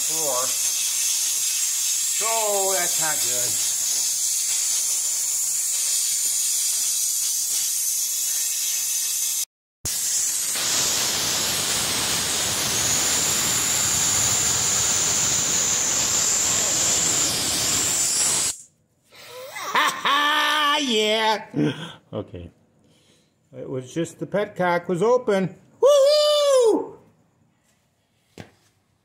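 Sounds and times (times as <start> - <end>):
compressed air hissing: 0.0 - 18.7.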